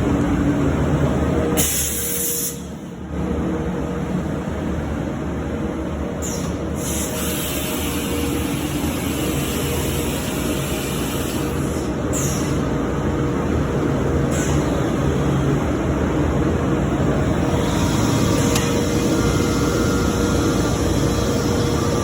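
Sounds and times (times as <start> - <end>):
woodworking machine drone: 16.8 - 22.0.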